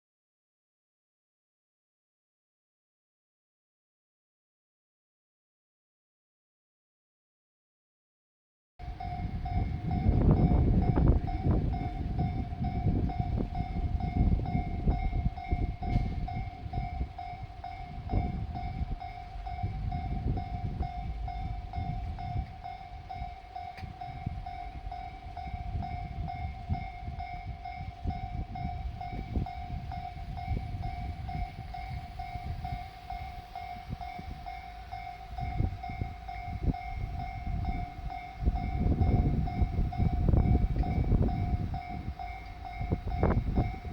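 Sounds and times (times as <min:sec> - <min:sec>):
level crossing alarm ringing: 0:08.8 - 0:43.9
railcar rumbling past: 0:08.8 - 0:43.9
train wheel clacks: 0:08.9 - 0:43.9.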